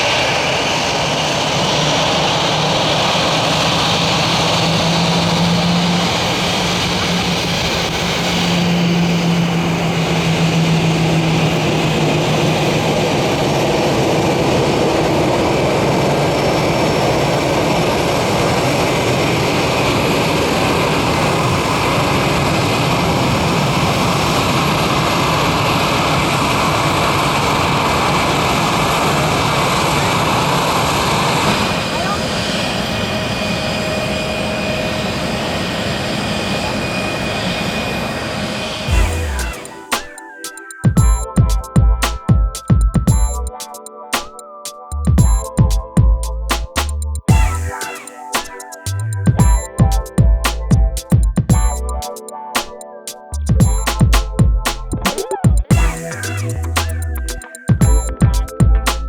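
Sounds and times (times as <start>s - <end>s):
jet engine cabin rushing noise: 0.0s - 28.8s
low hum: 38.9s - 39.6s.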